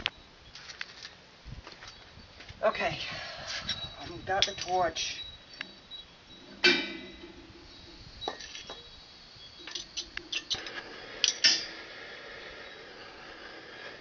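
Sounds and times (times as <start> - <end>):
metallic clinks: 3.7 - 11.7
torch flame hissing: 7.6 - 14.0.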